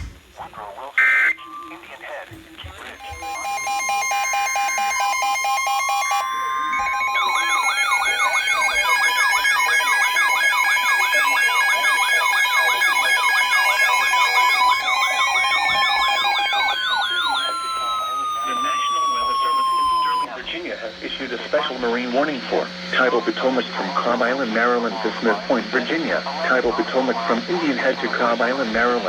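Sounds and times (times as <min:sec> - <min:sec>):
rapid pulsing alarm beeps: 0:01.0 - 0:29.0
steady alarm tones: 0:01.0 - 0:29.0
fast warbling alarm wails: 0:03.0 - 0:29.0.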